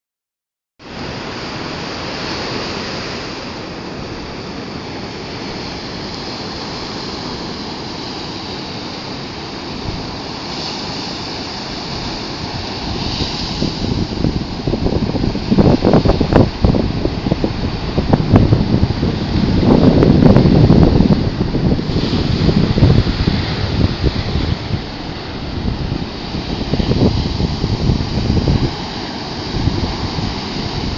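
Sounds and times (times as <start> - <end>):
surf breaking on beach: 0.8 - 30.9
wind buffeting microphone: 9.4 - 30.9.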